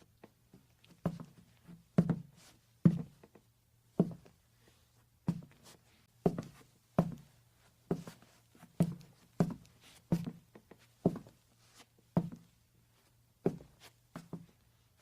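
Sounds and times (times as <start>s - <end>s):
footsteps on wooden floor: 0.5s - 3.4s, 4.0s - 4.3s, 6.2s - 7.3s, 7.9s - 11.4s, 12.2s - 12.5s.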